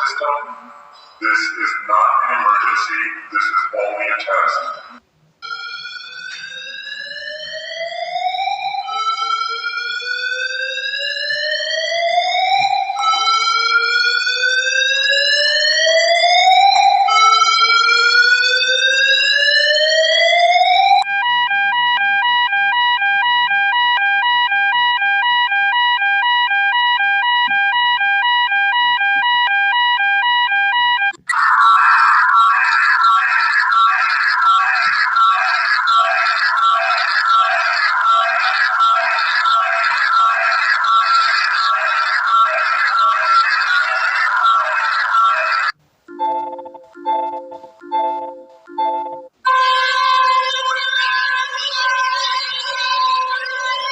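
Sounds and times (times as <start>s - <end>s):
electronic alarm siren: 0.0s - 53.9s.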